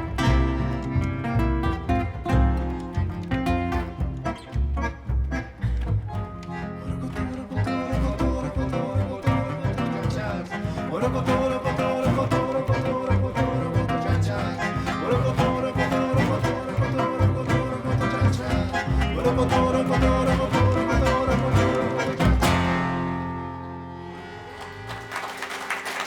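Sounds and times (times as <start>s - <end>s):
string trio playing tango: 0.0s - 25.2s
audience applause: 24.5s - 26.0s.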